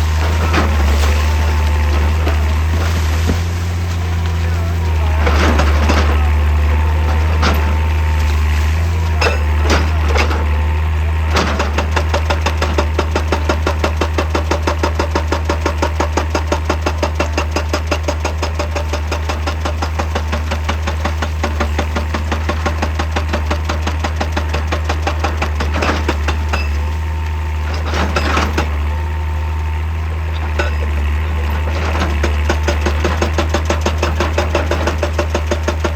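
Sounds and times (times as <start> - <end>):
excavator diesel engine running: 0.0 - 35.9
hydraulic breaker hammering rock: 0.0 - 35.9
steel knocking on rock: 11.3 - 27.0, 30.4 - 35.9.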